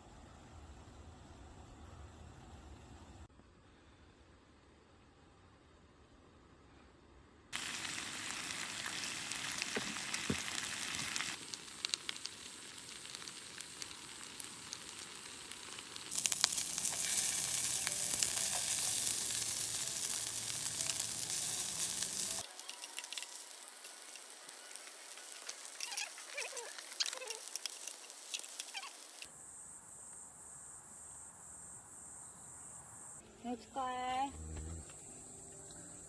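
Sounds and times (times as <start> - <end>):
food sizzling in a pan: 7.6 - 29.3.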